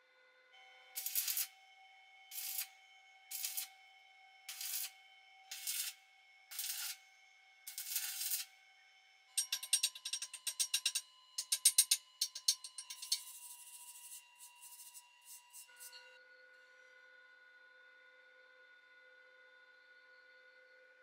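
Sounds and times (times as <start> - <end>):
faint steady tones: 0.6 - 16.3
rasping scraping strokes: 9.4 - 16.2.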